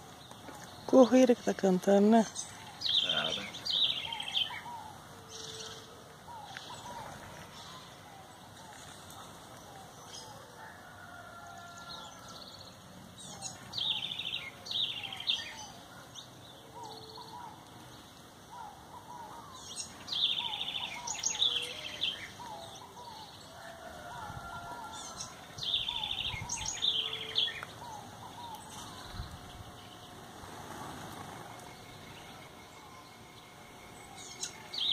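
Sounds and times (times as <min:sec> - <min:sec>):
wren singing trilling song: 0:00.0 - 0:07.0, 0:12.2 - 0:17.6, 0:18.6 - 0:23.5, 0:24.9 - 0:30.2, 0:31.5 - 0:34.9.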